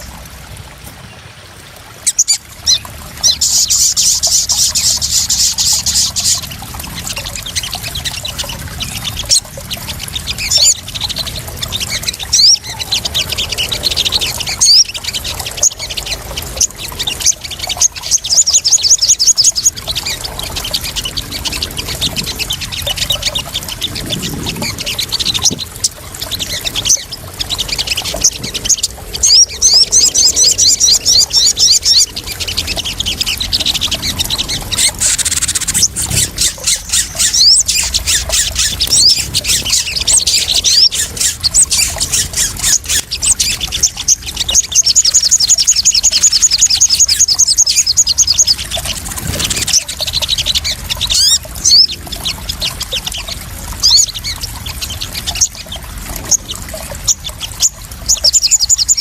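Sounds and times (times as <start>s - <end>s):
water splashing and trickling: 0.0s - 59.0s
bird trilling chirps: 2.0s - 59.0s.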